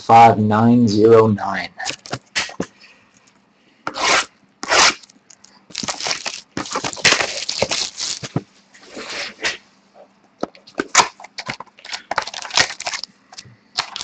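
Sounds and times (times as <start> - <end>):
card packs rustling and crinkling: 1.8 - 2.8, 4.6 - 9.5, 10.4 - 14.0
short scrapes: 3.9 - 5.0.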